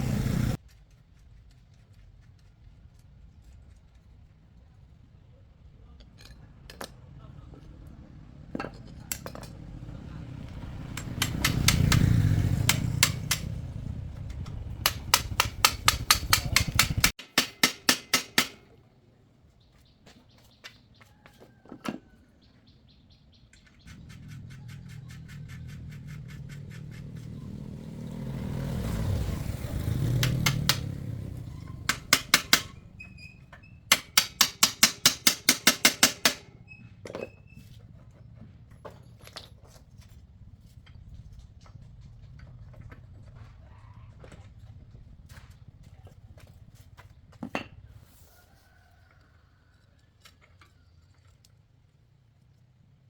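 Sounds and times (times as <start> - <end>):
low rumble: 0.0 - 0.6, 9.4 - 17.1
rapid sharp taps: 11.0 - 13.5, 14.7 - 18.6, 30.1 - 30.9.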